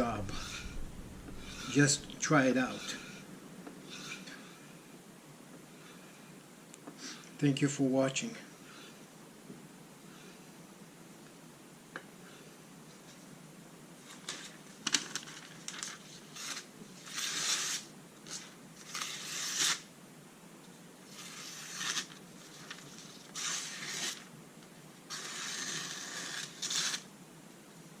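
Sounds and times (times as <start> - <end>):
scraping strokes: 0.0 - 4.8.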